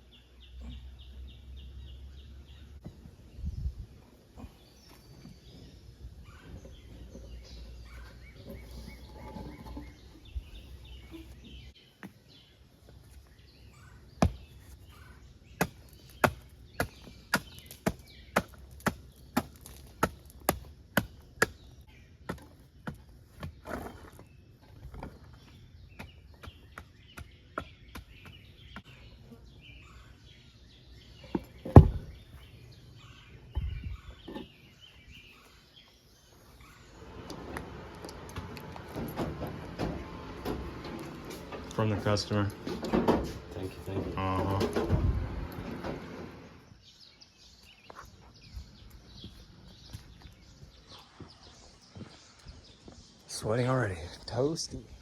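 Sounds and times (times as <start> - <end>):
small birds chirping: 0.0 - 55.0
loud thump: 31.7 - 32.1
clicks and knocks of work: 37.2 - 46.4.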